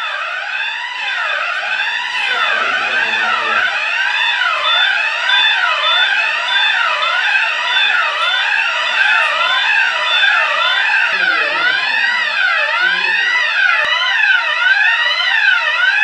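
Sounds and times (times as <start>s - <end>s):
fire alarm wailing: 0.0s - 16.0s
high pulsing beep: 2.2s - 3.7s.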